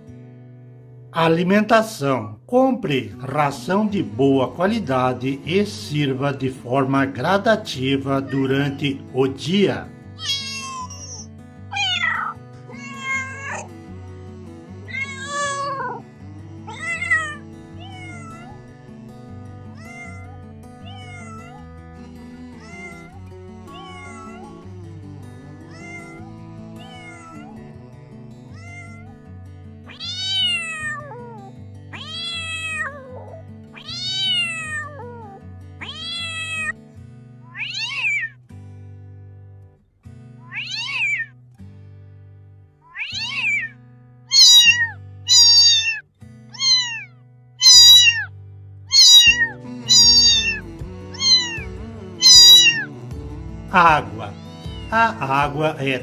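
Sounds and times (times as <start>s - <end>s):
cat meowing: 8.2s - 8.8s, 10.2s - 13.8s, 14.8s - 18.8s, 19.7s - 29.2s, 29.9s - 36.8s, 37.5s - 38.4s, 40.4s - 41.3s, 42.9s - 48.3s, 48.9s - 52.9s, 53.9s - 55.6s
background music with bass line: 49.0s - 56.0s.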